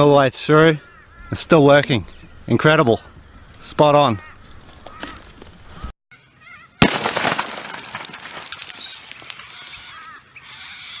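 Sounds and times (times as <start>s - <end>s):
birds calling faintly: 0.2s - 6.9s, 7.9s - 11.0s
loud sharp bang: 6.8s - 8.0s.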